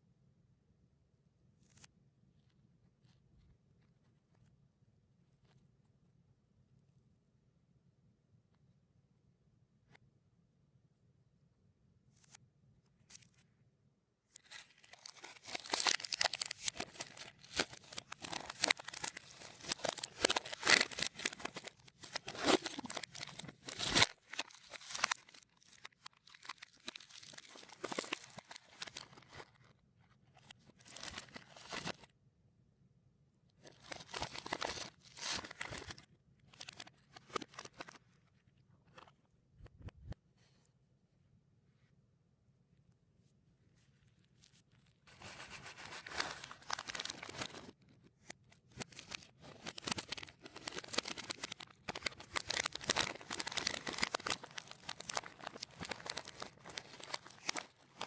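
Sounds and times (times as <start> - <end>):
reversed plastic wrapper crinkling: 14.4 - 29.7, 30.3 - 32.1, 33.6 - 38.0, 45.1 - 58.0.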